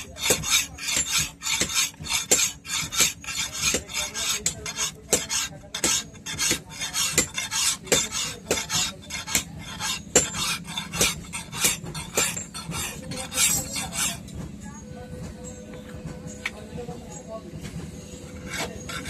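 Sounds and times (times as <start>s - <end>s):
knife blade scraping strokes: 0.0s - 14.2s, 18.3s - 19.0s.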